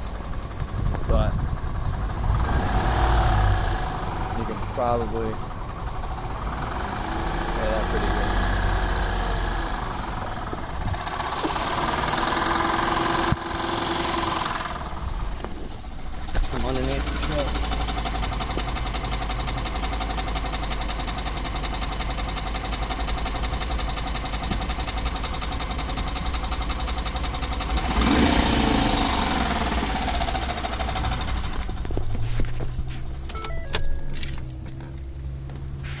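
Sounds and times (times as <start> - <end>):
engine knocking rattle: 9.7 - 32.1.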